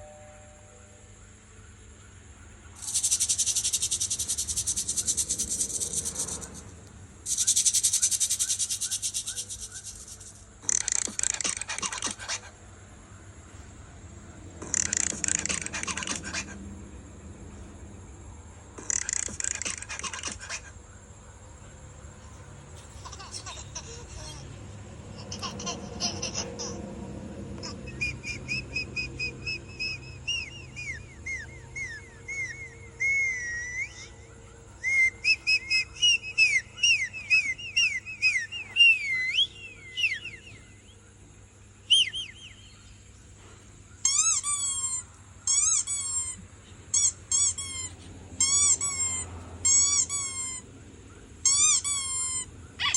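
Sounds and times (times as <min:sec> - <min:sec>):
high-pitched whistled chirps: 0:02.8 - 0:06.6, 0:07.3 - 0:11.7, 0:27.8 - 0:40.9, 0:41.8 - 0:42.9.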